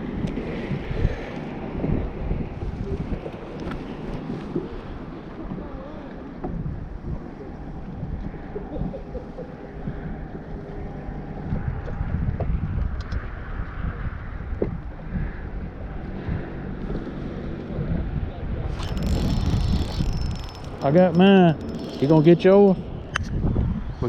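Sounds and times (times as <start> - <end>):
wind rumbling on microphone: 0.0 - 24.0
electric motor whine: 18.7 - 23.1.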